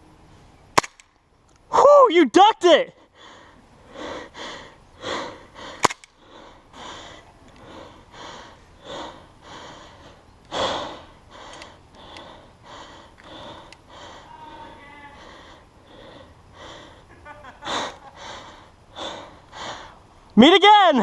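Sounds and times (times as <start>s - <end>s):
sharp crack: 0.8s - 1.2s, 5.7s - 6.2s
heavy breathing: 3.0s - 20.1s.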